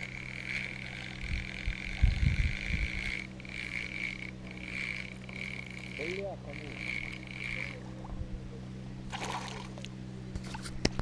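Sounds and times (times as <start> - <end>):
frogs trilling chorus: 2.6 - 8.0.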